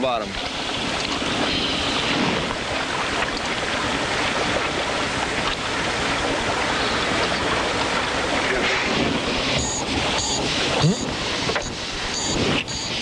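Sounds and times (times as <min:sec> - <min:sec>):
water rushing around boat: 0:00.0 - 0:13.0
wind rushing: 0:06.8 - 0:12.8.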